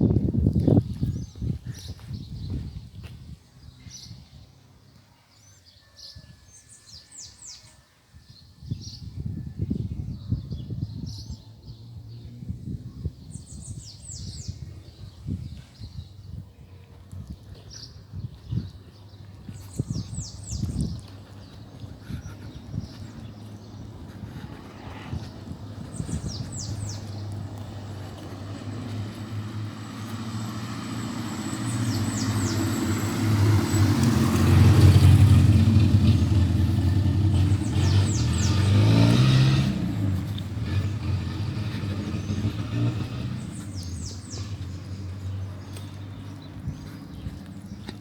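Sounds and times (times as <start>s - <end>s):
motor vehicle passing: 17.8s - 48.0s.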